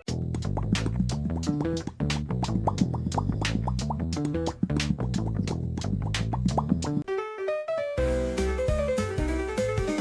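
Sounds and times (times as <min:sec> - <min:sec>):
bass: 0:00.0 - 0:07.1, 0:08.0 - 0:10.0
quick steady beat: 0:08.0 - 0:10.0.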